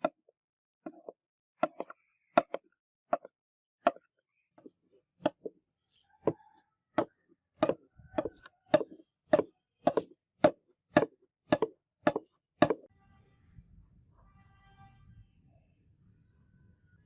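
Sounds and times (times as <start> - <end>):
sharp knocks: 7.0 - 12.9.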